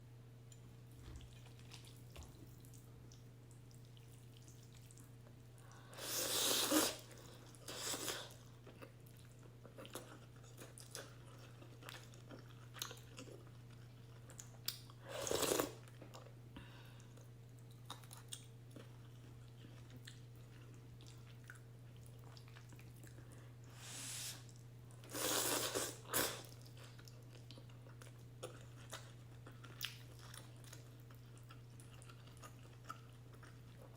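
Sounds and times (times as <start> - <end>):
low steady hum: 0.0 - 33.9
slurping noodles: 6.0 - 7.1, 25.1 - 26.5.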